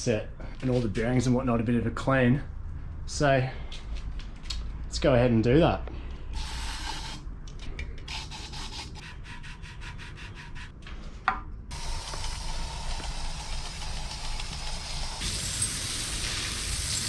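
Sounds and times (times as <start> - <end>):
steady hiss: 11.7 - 17.0.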